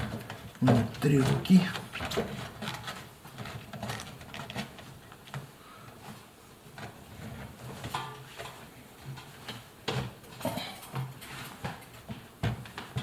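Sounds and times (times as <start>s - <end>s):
rubber seal rubbing and rustling: 0.0s - 10.2s.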